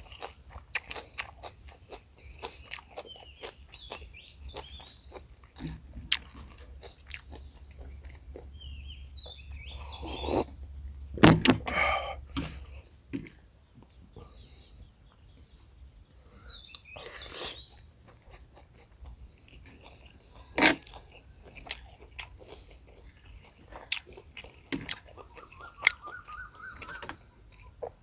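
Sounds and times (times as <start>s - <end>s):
person chewing: 0.0s - 8.6s, 16.7s - 28.0s.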